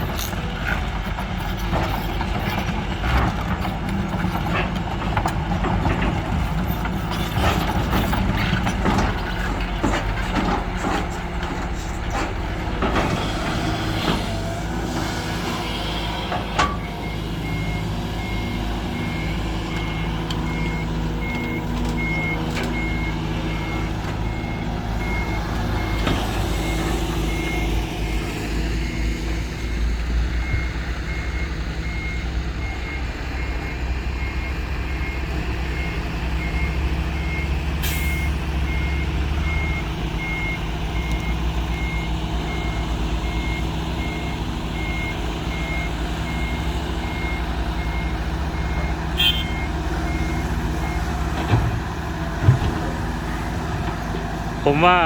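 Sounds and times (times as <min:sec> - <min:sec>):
heavy diesel engines running: 0:00.0 - 0:55.0
reversing alarm beeping: 0:16.3 - 0:51.8.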